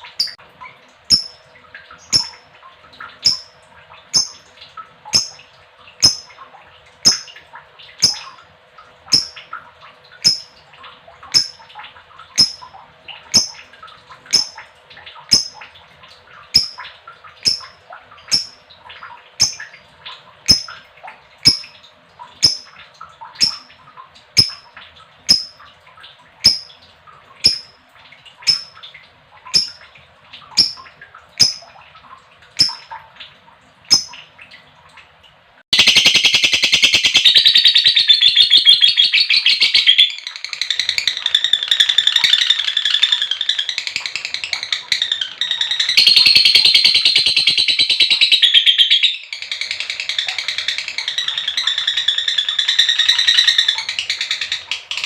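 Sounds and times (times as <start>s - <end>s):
lovebird high-pitched call: 1.1s - 1.4s, 2.0s - 2.4s, 3.2s - 3.6s, 4.2s - 4.4s, 6.0s - 6.3s, 7.1s - 7.3s, 8.0s - 8.4s, 9.1s - 9.4s, 10.2s - 10.5s, 11.4s - 11.6s, 12.4s - 12.6s, 13.4s - 13.6s, 14.3s - 14.6s, 16.6s - 16.8s, 17.4s - 17.7s, 18.3s - 18.6s, 23.4s - 23.7s, 30.6s - 30.8s, 32.6s - 32.8s, 35.8s - 44.3s, 45.0s - 55.0s
lovebird chirping: 2.0s - 2.4s, 3.2s - 3.5s, 9.1s - 9.4s, 12.4s - 12.6s, 14.3s - 14.6s, 17.4s - 17.7s, 23.4s - 23.7s.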